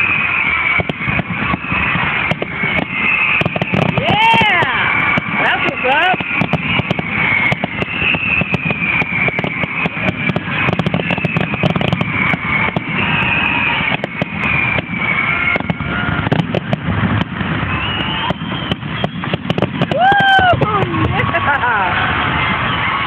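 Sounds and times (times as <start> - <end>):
fireworks crackling pops: 0.0 - 23.0
fireworks whistling: 0.0 - 23.0.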